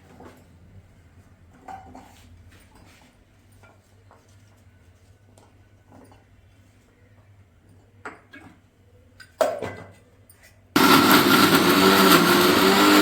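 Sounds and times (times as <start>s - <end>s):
mixer grinder running: 10.8s - 13.0s.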